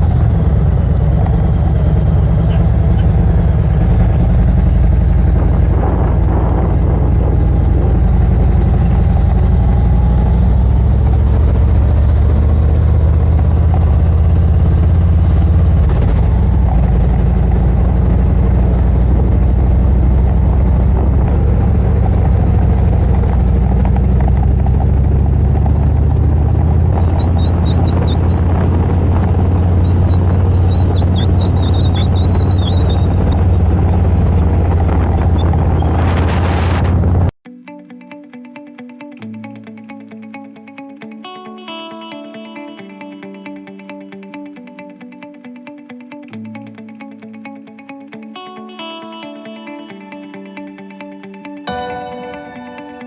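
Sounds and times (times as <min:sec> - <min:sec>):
motorcycle engine running: 0:00.0 - 0:37.4
wind and road noise: 0:00.0 - 0:37.4
faint high chirps: 0:27.0 - 0:33.6.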